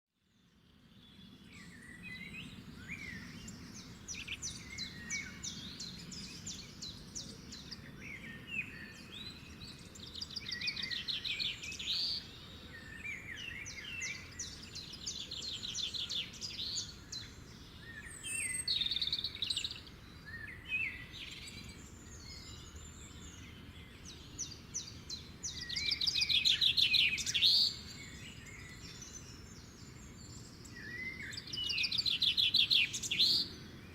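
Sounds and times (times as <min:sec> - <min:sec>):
small birds chirping: 0:00.4 - 0:33.9.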